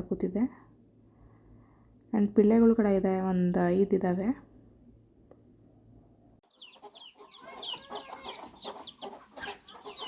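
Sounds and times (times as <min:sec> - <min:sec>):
chicks peeping: 0:06.4 - 0:10.0
hen clucking: 0:06.4 - 0:10.0.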